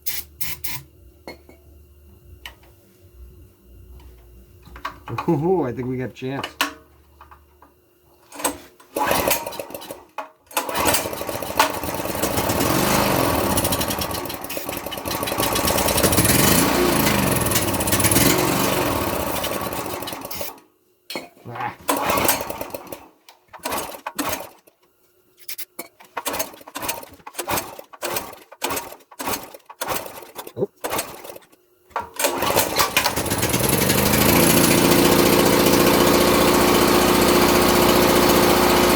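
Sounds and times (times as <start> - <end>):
portable generator engine running: 10.6 - 20.3, 32.2 - 38.9.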